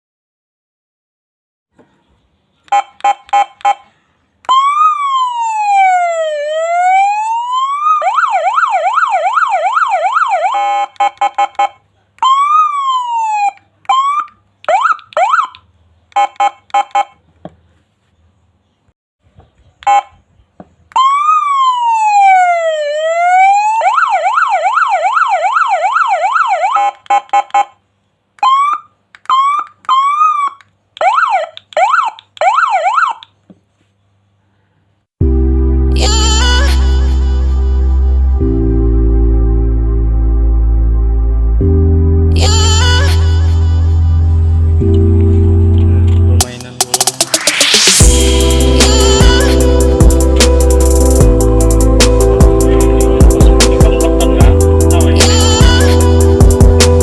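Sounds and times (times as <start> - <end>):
electronic siren wailing and yelping: 2.6 - 17.2, 20.9 - 27.8, 28.4 - 33.4.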